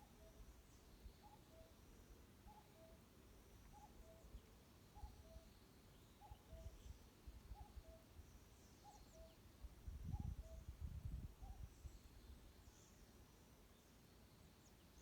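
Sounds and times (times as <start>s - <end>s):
faint high bird chirps: 0.0s - 13.0s.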